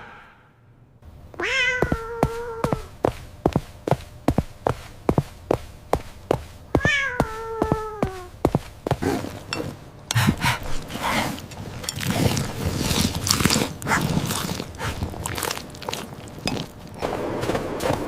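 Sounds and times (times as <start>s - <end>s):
crunching and clicking: 10.8s - 18.0s.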